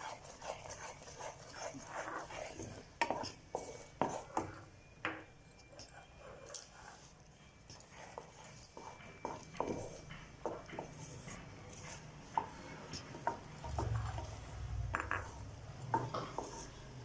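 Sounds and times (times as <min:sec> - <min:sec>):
utensil scraping in a pan: 0:07.8 - 0:14.6.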